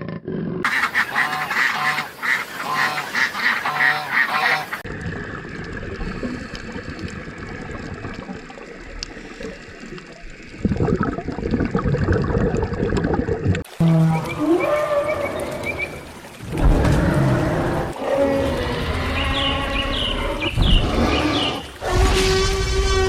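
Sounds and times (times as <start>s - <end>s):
ducks quacking: 0.6s - 4.8s.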